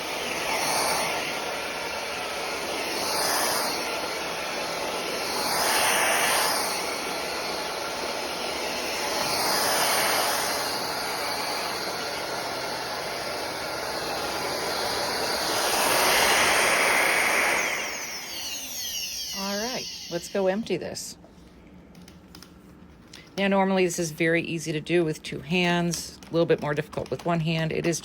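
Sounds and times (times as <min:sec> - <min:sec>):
stick vacuum cleaner running: 0:00.0 - 0:20.8.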